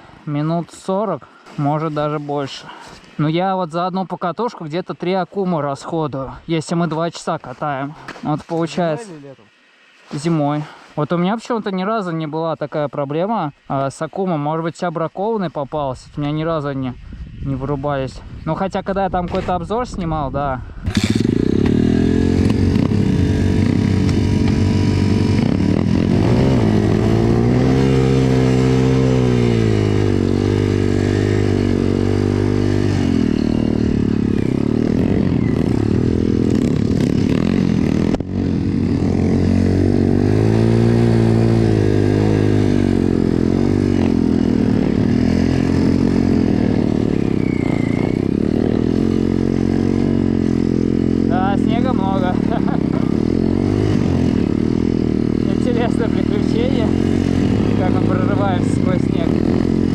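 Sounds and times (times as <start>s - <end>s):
motorbike engine revving: 20.8s - 59.9s.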